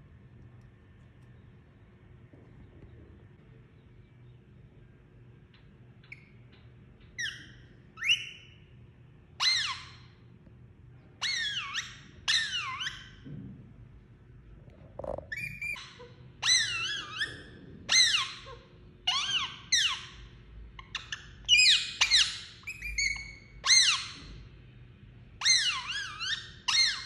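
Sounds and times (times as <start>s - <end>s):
parakeet shrill calls: 7.2s - 8.6s, 9.4s - 10.2s, 11.2s - 13.2s, 15.3s - 24.3s, 25.4s - 27.0s.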